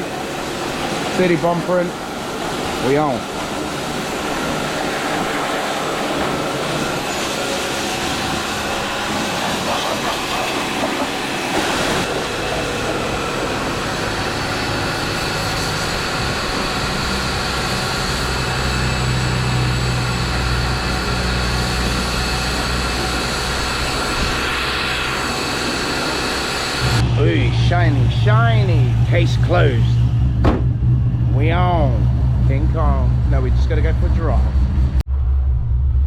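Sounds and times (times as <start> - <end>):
car engine idling: 7.4 - 35.0.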